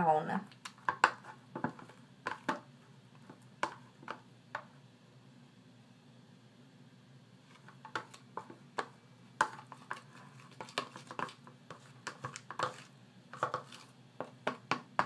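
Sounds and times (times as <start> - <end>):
spoon scraping a dish: 7.5 - 14.6.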